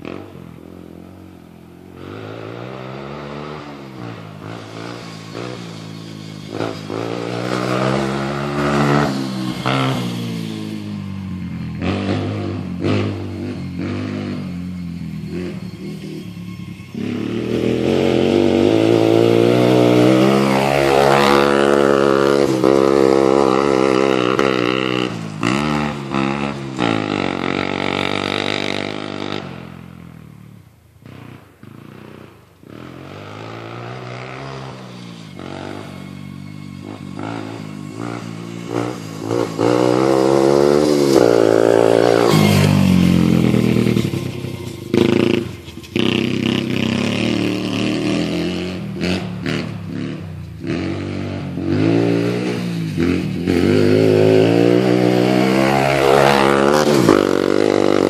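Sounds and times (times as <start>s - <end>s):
atv engine revving: 0.0s - 58.0s.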